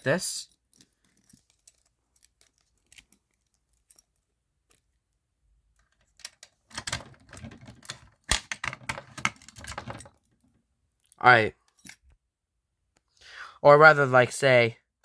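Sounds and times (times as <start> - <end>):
fire alarm pull station clicking: 6.7 - 9.7.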